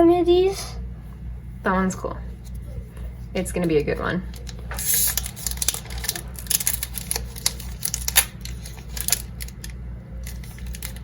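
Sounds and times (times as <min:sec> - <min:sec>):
steady low hum: 0:00.0 - 0:11.0
foil pack crinkling: 0:04.3 - 0:11.0.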